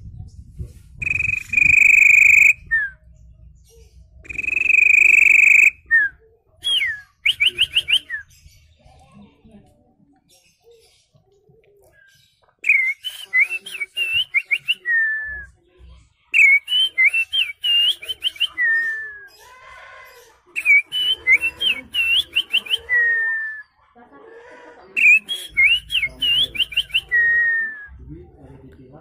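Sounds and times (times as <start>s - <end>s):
man whistling like a songbird: 1.0s - 3.0s, 4.2s - 8.3s, 12.6s - 15.4s, 16.4s - 19.3s, 20.6s - 23.6s, 25.0s - 27.9s.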